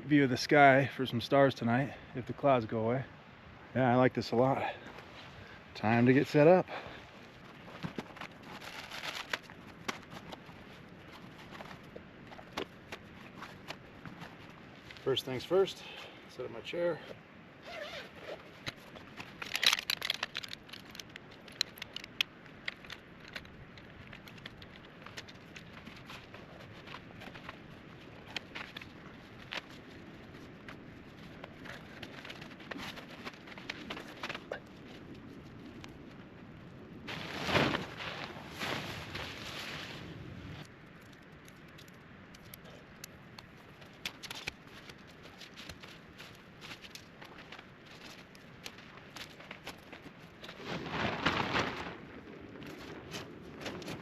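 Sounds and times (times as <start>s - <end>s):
fabric rustling: 7.6s - 12.5s, 37.1s - 40.6s
light clicks and ticks: 18.6s - 27.6s, 40.6s - 50.0s.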